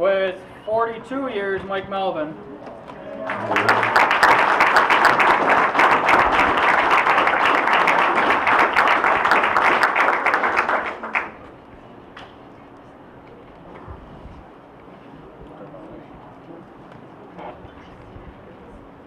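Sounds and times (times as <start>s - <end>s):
audience applauding: 3.1s - 11.5s.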